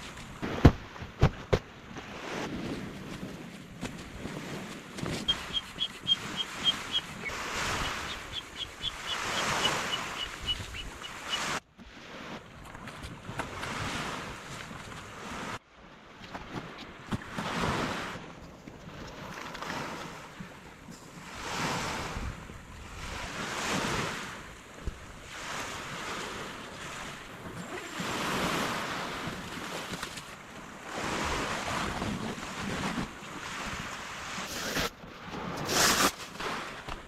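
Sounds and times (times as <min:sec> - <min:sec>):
small waves washing on shore: 0:00.0 - 0:37.0
wind buffeting microphone: 0:02.2 - 0:11.6.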